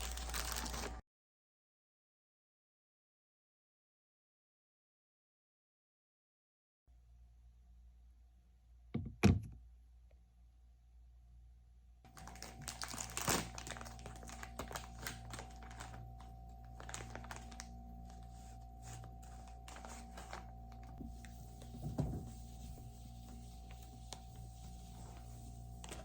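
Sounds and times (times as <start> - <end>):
steady low hum: 12.4 - 26.0.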